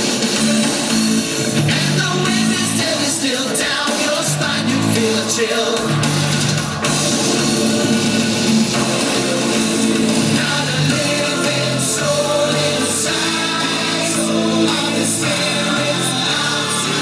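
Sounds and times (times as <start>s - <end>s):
pop song with rock beat: 0.0s - 17.0s.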